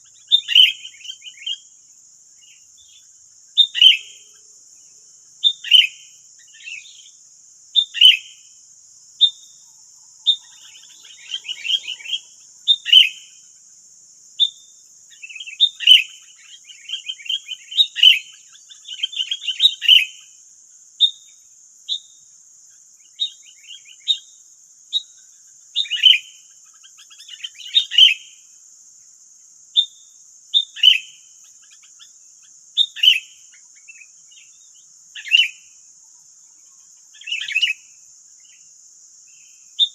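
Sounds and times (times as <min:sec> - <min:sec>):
birds chattering: 0:00.0 - 0:01.6, 0:09.2 - 0:13.4.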